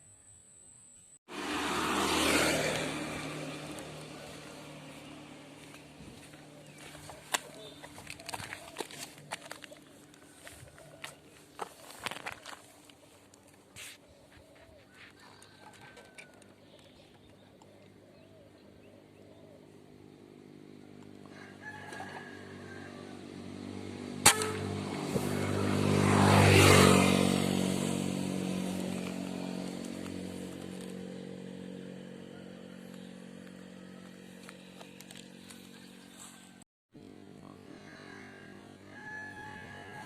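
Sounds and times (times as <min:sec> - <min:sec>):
small engine running: 0:01.3 - 0:13.5, 0:15.4 - 0:40.0
sharp crack: 0:24.2 - 0:25.1.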